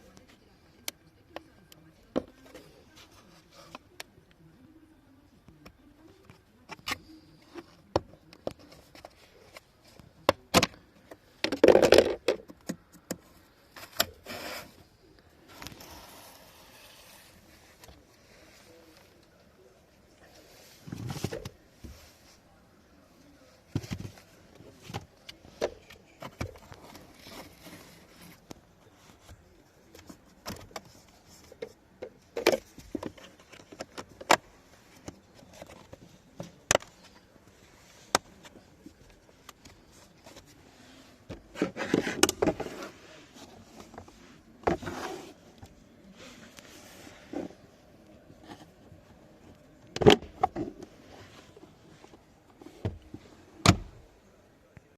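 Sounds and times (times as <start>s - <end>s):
plastic clicks and knocks: 11.4s - 13.2s.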